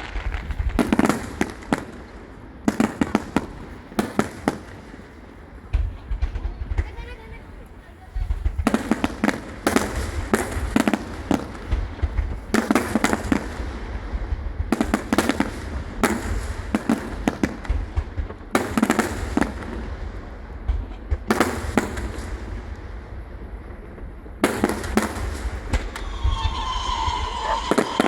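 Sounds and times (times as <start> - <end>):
fireworks bangs and crackling: 0.0 - 28.0
low rumble: 25.8 - 28.0.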